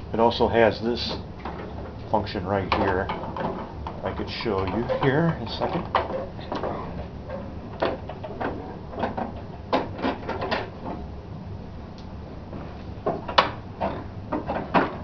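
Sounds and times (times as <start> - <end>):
cast-iron vise clunking: 2.6 - 11.0.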